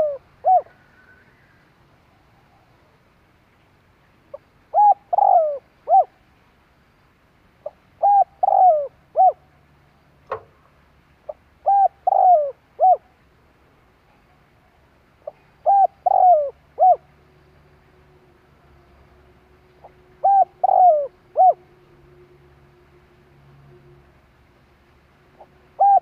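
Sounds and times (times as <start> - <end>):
dove cooing: 0.0 - 1.5, 4.3 - 6.2, 7.6 - 9.4, 11.3 - 13.1, 15.2 - 17.1, 19.8 - 21.7, 25.4 - 26.0.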